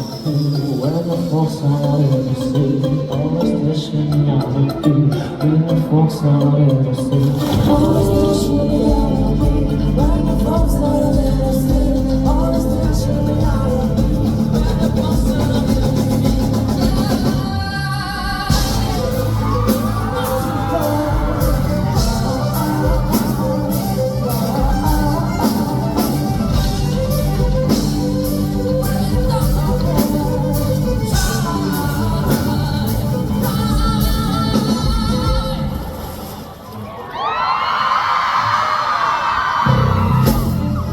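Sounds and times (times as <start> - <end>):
person singing: 0.0 - 36.7
guitar: 0.0 - 36.8, 39.6 - 40.9
bass: 0.9 - 36.1, 39.7 - 40.9
drum beat: 7.4 - 17.4, 18.4 - 35.6.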